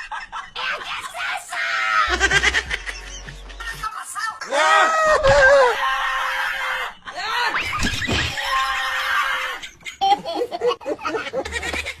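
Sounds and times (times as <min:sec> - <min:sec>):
person laughing: 0:02.1 - 0:04.0, 0:10.0 - 0:12.0
high-pitched screams: 0:04.5 - 0:09.7.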